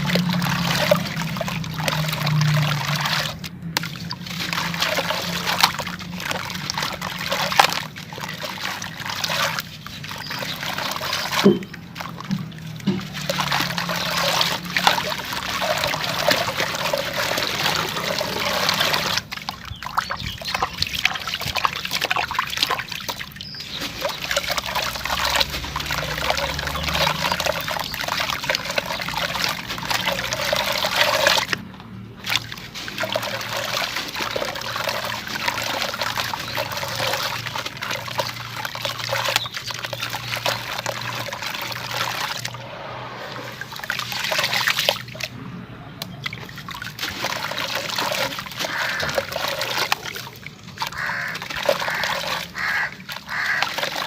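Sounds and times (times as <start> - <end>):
cement crumbling in water: 0.0 - 42.6.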